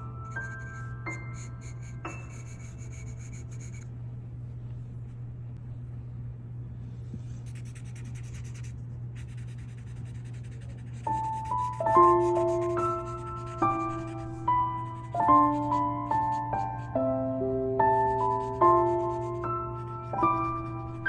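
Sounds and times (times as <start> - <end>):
steady low hum: 0.0 - 21.0
pencil scratching on paper: 0.3 - 3.8, 7.4 - 16.7, 18.0 - 21.0.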